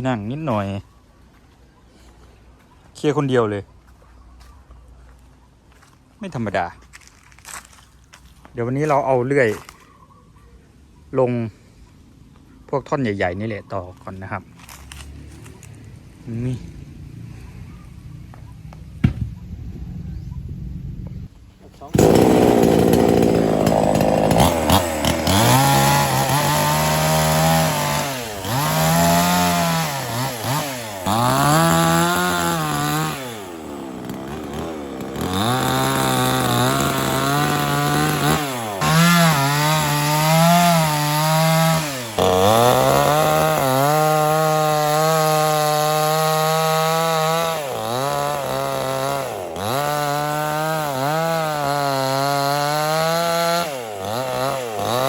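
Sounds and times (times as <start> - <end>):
chainsaw cutting logs: 21.8 - 55.0.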